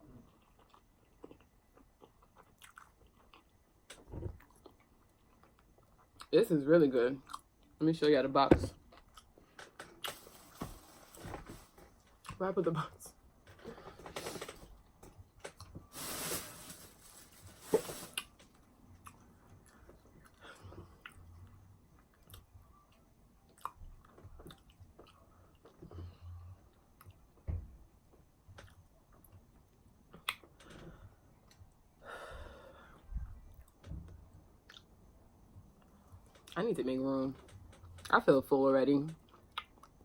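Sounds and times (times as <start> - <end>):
person chewing food: 0.2 - 6.3, 23.4 - 25.9, 39.2 - 40.0.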